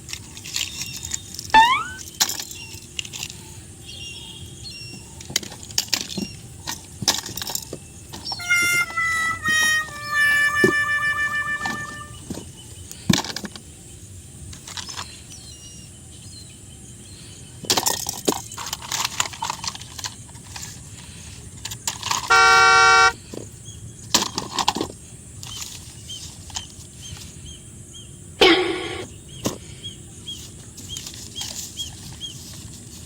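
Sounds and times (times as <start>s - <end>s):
plastic toys clicking and rattling: 0.0s - 3.4s, 5.2s - 12.4s, 14.5s - 15.1s, 17.6s - 22.4s, 24.1s - 26.9s, 30.5s - 33.0s
toy vehicle horn beeping: 1.6s - 2.0s, 8.2s - 12.3s, 22.3s - 23.2s, 28.4s - 29.1s.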